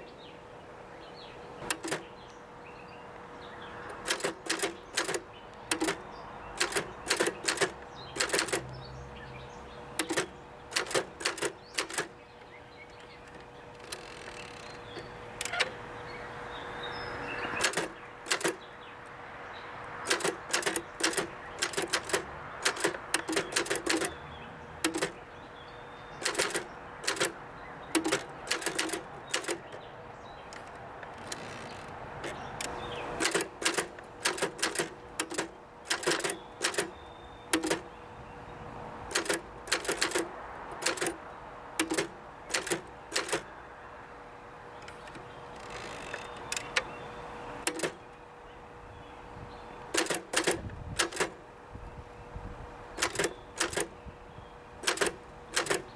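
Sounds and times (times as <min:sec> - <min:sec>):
typewriter keystroke clacks: 0:01.6 - 0:02.1, 0:03.8 - 0:08.8, 0:10.0 - 0:15.8, 0:17.6 - 0:18.7, 0:19.9 - 0:24.2, 0:24.8 - 0:25.3, 0:26.2 - 0:37.9, 0:39.1 - 0:41.2, 0:41.8 - 0:43.6, 0:44.8 - 0:47.0, 0:47.6 - 0:48.1, 0:49.9 - 0:51.4, 0:53.0 - 0:54.0, 0:54.8 - 0:55.9.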